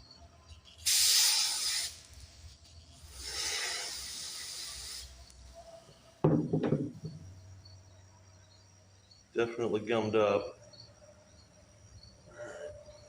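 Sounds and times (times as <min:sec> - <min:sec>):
hiss of spray: 0:00.8 - 0:05.3.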